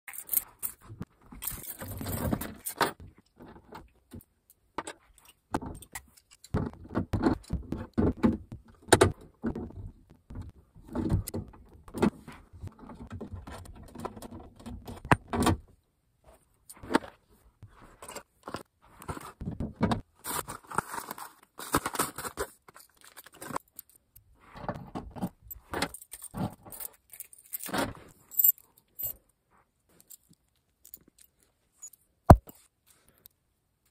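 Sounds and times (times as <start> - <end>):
keys jangling: 0.1 - 2.8, 25.5 - 27.7.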